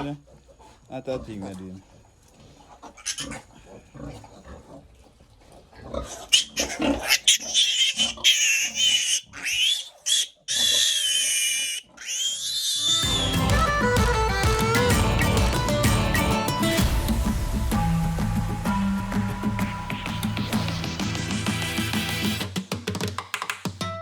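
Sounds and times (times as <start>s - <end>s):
pigs grunting: 0.0s - 13.9s
piglets squealing: 2.9s - 3.5s, 6.1s - 16.6s.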